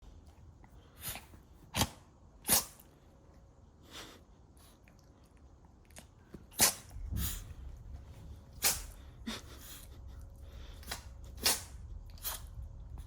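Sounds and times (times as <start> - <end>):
dog sneezing: 1.0 - 2.8, 6.5 - 7.4, 8.6 - 9.8, 10.9 - 12.5.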